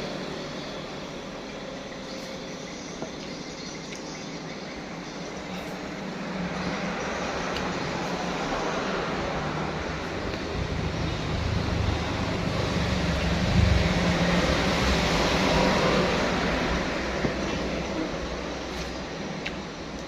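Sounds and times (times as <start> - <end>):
vehicle passing with engine drone: 5.0 - 19.9.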